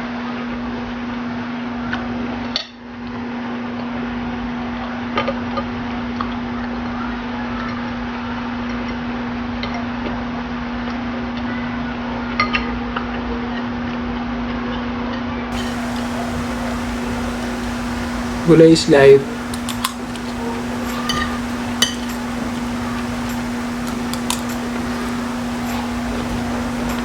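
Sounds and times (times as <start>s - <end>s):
steady hum and hiss: 15.5s - 27.0s
utensils clinking against a dish: 15.6s - 27.0s.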